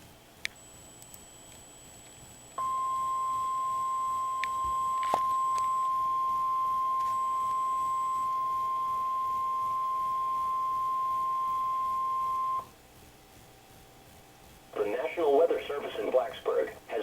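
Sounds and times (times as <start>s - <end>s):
faint radio hiss: 0.0s - 17.0s
steady alarm tone: 0.7s - 12.7s.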